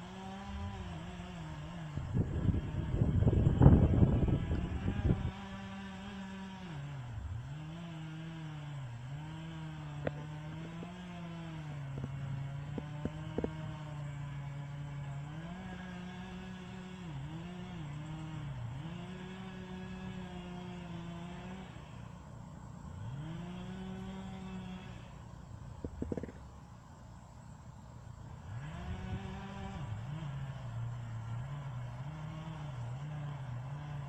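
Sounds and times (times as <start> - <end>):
chainsaw cutting wood: 0.0 - 34.0.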